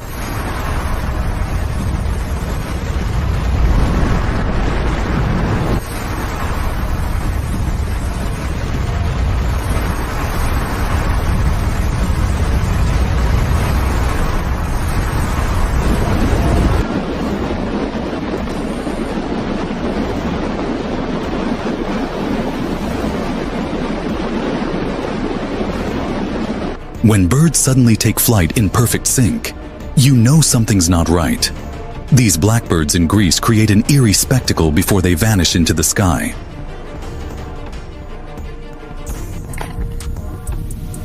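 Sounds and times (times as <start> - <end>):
wind buffeting microphone: 0.0 - 26.8
avalanche rumbling and rushing: 0.0 - 41.0.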